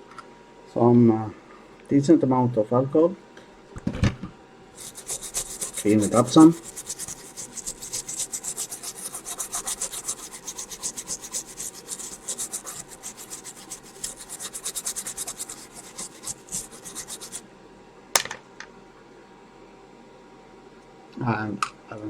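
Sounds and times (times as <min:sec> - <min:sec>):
rubbing strokes on circuit board: 0:04.8 - 0:17.4.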